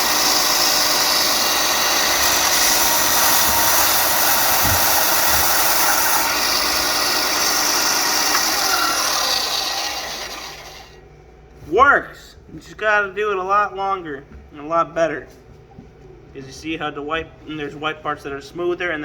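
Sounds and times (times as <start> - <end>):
sander rasping wood: 0.0 - 10.9
belt sander humming: 0.0 - 11.0.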